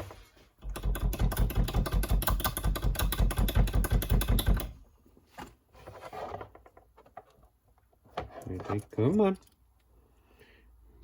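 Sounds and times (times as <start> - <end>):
rapid mechanical clicking: 0.6 - 4.7.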